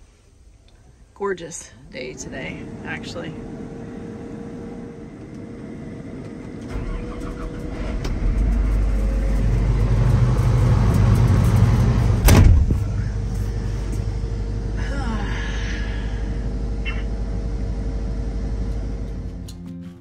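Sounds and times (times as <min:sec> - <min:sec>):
combine engine revving up: 0:02.0 - 0:19.4
loud clunk: 0:12.0 - 0:13.2.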